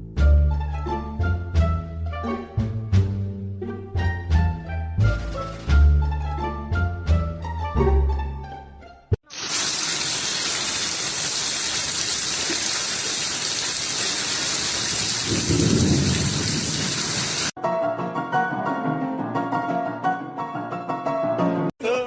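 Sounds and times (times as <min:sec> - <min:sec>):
heavy rain: 0:09.3 - 0:17.5
thunder rumble: 0:14.9 - 0:17.5
piano music: 0:17.6 - 0:21.7.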